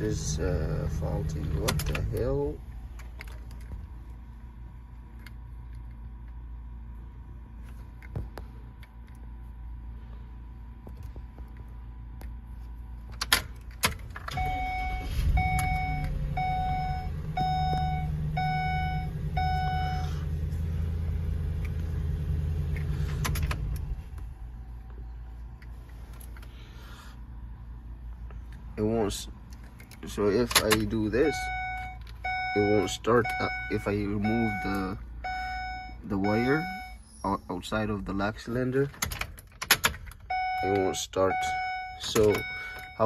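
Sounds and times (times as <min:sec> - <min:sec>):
low steady hum: 0:00.0 - 0:43.0
van warning chime beeping: 0:14.2 - 0:21.6, 0:30.6 - 0:38.0, 0:40.2 - 0:43.0
key clicks in ignition lock: 0:29.5 - 0:31.0, 0:38.9 - 0:40.9.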